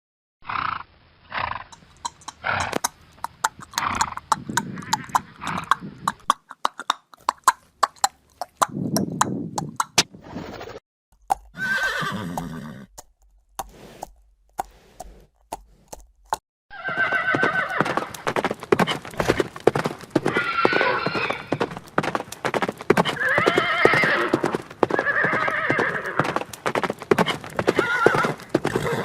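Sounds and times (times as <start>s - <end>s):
horse blowing breath: 1.4s - 6.3s, 7.2s - 10.0s, 13.6s - 16.4s, 17.1s - 29.0s
hoof clip-clops: 1.7s - 10.0s, 11.3s - 29.0s
horse whinny: 11.5s - 12.9s, 16.7s - 18.3s, 20.2s - 21.8s, 23.0s - 26.4s, 27.2s - 29.0s.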